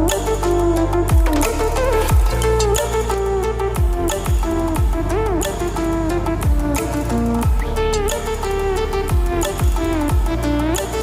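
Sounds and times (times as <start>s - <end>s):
electronic music with beat: 0.0s - 11.0s.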